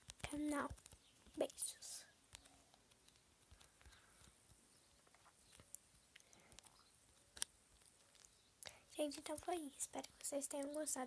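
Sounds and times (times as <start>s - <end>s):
faint clicks: 2.3s - 8.8s.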